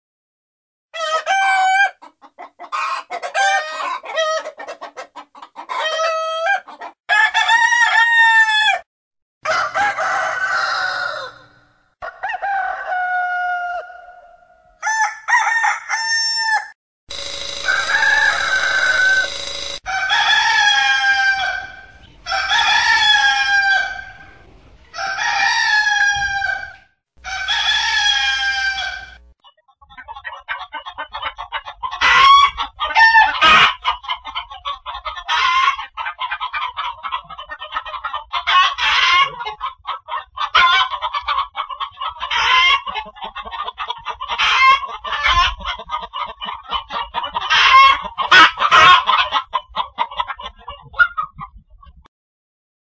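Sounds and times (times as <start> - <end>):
rooster crowing: 1.0 - 1.9, 6.0 - 8.8, 9.4 - 14.2, 14.8 - 24.2.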